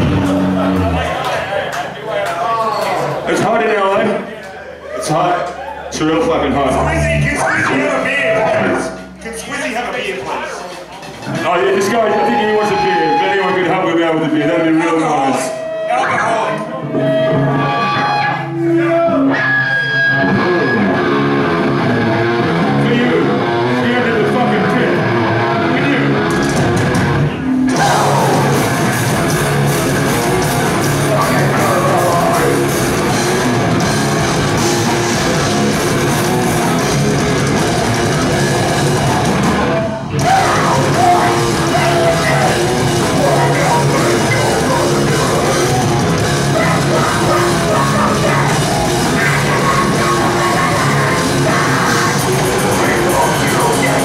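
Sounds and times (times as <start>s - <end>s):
distorted electric guitars: 0.0s - 1.6s, 5.5s - 54.0s
drums: 0.0s - 1.9s, 5.0s - 54.0s
bass: 0.0s - 54.0s
shouted vocals: 27.7s - 33.4s, 40.1s - 54.0s.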